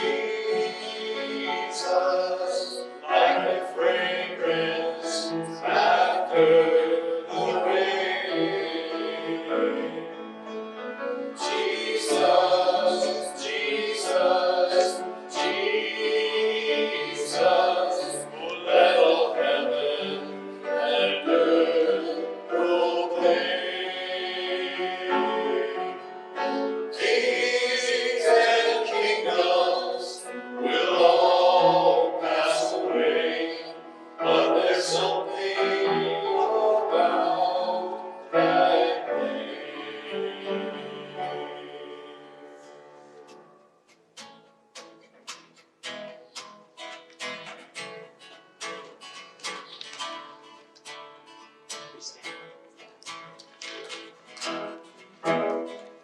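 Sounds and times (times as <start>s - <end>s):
worship song with singers: 0.0s - 43.4s.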